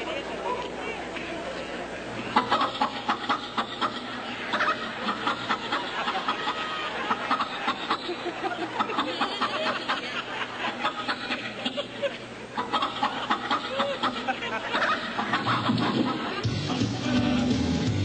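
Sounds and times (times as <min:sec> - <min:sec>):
audience chattering: 0:00.0 - 0:18.0
audience chuckling: 0:01.7 - 0:16.5
chicken-like clucking: 0:02.2 - 0:16.5.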